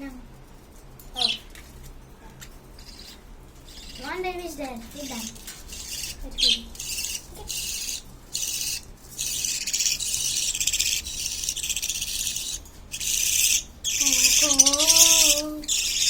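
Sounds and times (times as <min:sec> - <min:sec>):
chicks begging calls: 0:05.0 - 0:16.0.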